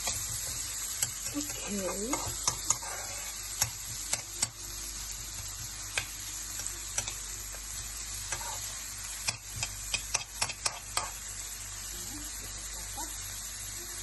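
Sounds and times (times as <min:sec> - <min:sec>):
onion sizzling in hot oil: 0:00.0 - 0:14.0.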